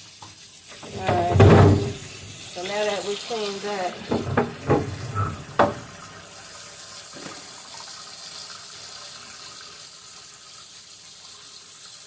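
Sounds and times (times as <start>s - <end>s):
tap running into sink: 0.2s - 3.0s, 3.9s - 6.2s, 7.1s - 7.5s.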